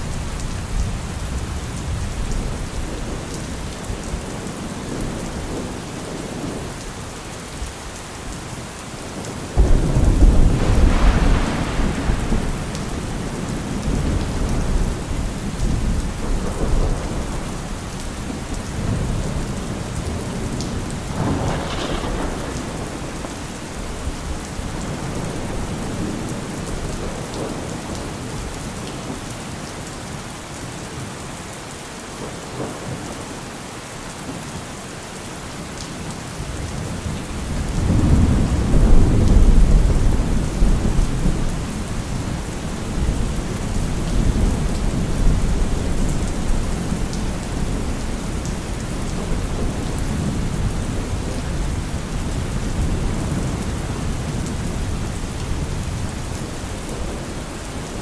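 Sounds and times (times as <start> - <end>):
heavy rain: 0.0 - 58.0
crackling thunder peal: 9.2 - 27.7
thunder rumbling: 9.2 - 28.2, 36.9 - 58.0.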